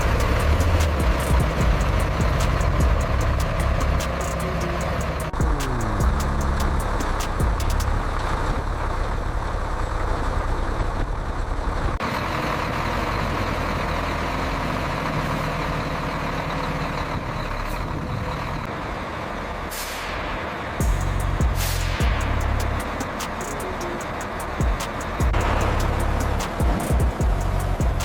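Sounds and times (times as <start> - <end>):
hissing noise: 0.0 - 8.2, 19.7 - 28.0
heavy machinery engine running: 0.0 - 19.6, 20.8 - 28.0.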